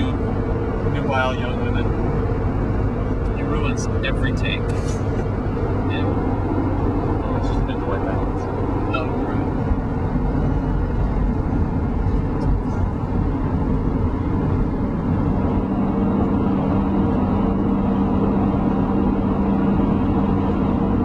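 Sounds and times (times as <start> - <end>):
car road and engine noise: 0.0 - 21.0
steady hum: 0.0 - 21.0.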